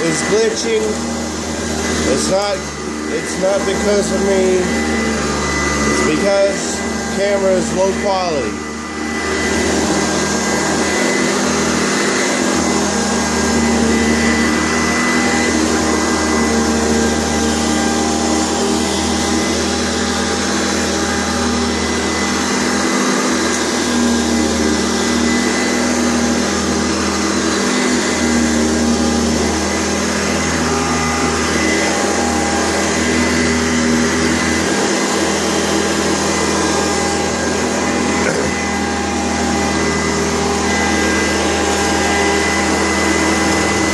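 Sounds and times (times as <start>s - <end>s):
upright vacuum cleaner running: 0.0s - 43.9s.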